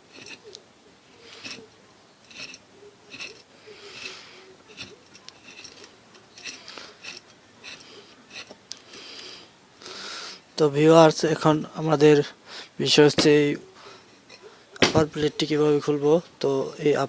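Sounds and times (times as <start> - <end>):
metal parts clicking and scraping: 0.0 - 9.4, 14.1 - 15.6.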